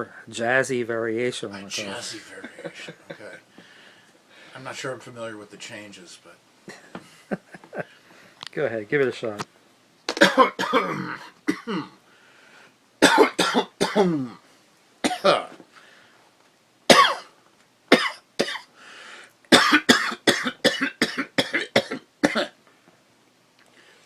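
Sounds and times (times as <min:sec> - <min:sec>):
person coughing: 0:10.1 - 0:12.0, 0:13.0 - 0:14.4, 0:15.0 - 0:15.6, 0:16.9 - 0:17.3, 0:17.9 - 0:18.7, 0:19.5 - 0:22.6.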